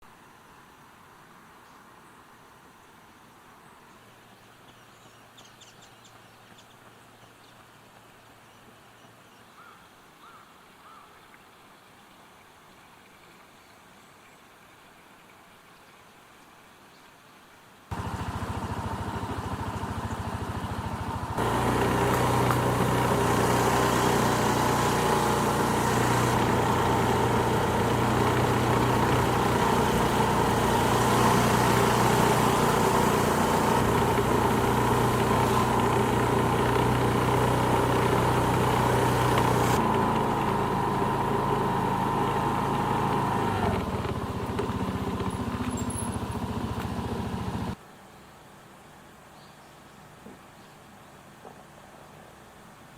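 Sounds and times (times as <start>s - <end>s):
engine running: 17.9s - 47.8s.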